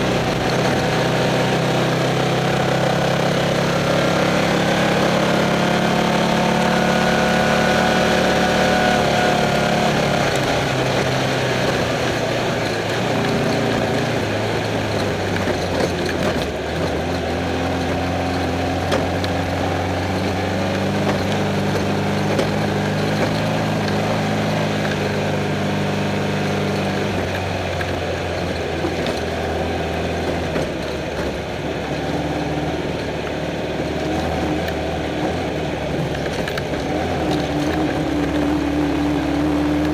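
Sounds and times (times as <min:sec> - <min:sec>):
race car engine revving: 0:00.0 - 0:39.9.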